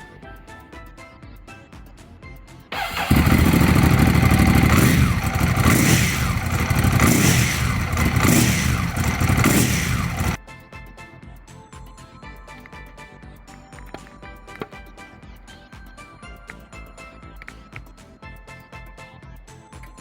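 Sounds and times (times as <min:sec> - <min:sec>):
motorcycle engine starting and running: 0:02.7 - 0:10.4.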